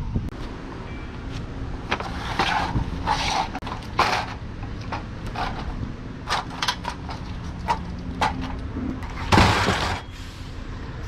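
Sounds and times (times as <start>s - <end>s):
scrap metal clanking: 1.9s - 10.1s
metal rasping scrapes: 2.0s - 4.4s.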